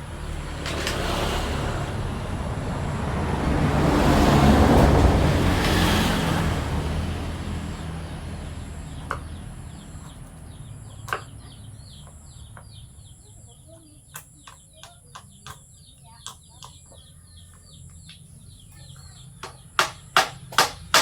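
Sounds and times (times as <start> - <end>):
vehicle passing by: 0.0 - 13.1
sharp knocks: 19.4 - 21.0.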